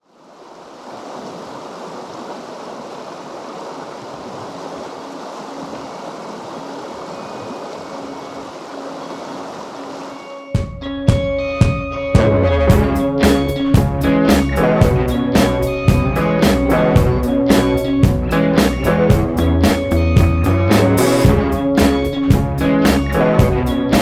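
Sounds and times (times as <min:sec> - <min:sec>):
creek water rushing: 0:00.0 - 0:10.5
guitar music: 0:10.2 - 0:24.0.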